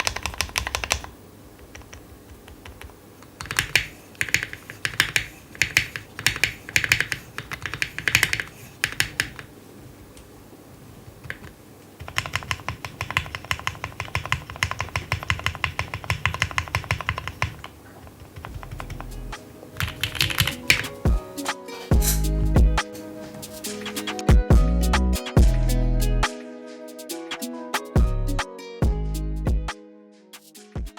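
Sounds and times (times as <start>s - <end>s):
mechanical keyboard typing: 0.0s - 9.5s, 11.0s - 21.2s
music: 18.9s - 30.9s.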